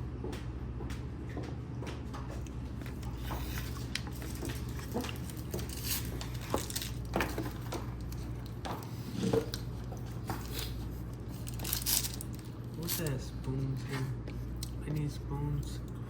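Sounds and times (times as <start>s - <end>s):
steady low hum: 0.0s - 16.0s
food containers and utensils clicking: 3.6s - 13.2s.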